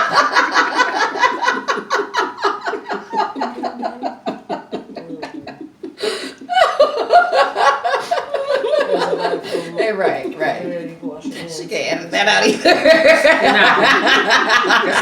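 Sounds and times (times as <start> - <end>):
people laughing hard: 0.0 - 10.2, 12.4 - 15.0
person breathing: 6.0 - 6.5, 9.4 - 9.9.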